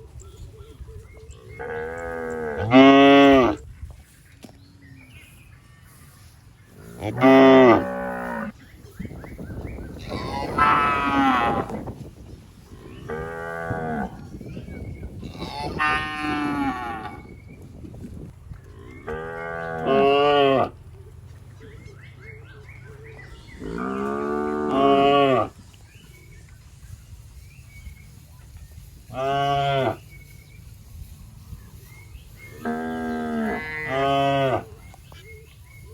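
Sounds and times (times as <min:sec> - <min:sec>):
cattle mooing: 0:06.9 - 0:08.5, 0:10.1 - 0:11.8, 0:15.3 - 0:17.3, 0:18.8 - 0:20.8, 0:23.5 - 0:25.5.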